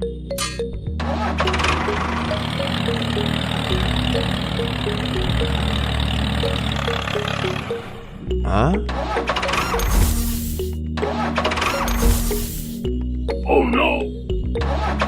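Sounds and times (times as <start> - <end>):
cartoon engine rattling: 0.4 - 8.2, 8.9 - 12.6.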